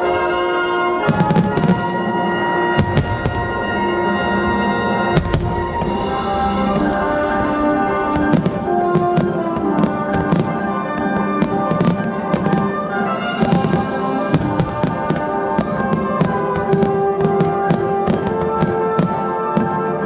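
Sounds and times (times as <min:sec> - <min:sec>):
fireworks bursting: 0:00.0 - 0:20.0
loud music with long held notes: 0:00.0 - 0:20.0.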